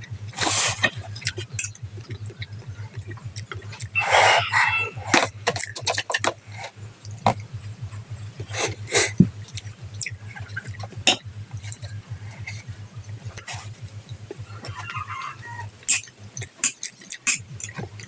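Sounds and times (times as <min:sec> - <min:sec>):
mouth clicks and smacks: 0:00.0 - 0:18.0
steady low hum: 0:00.0 - 0:18.0
wet chewing and slurping noodles: 0:14.4 - 0:18.0.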